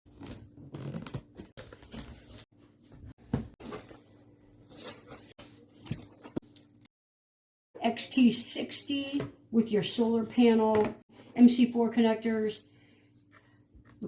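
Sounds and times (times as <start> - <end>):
packaging rustling and tearing: 0.1 - 2.5.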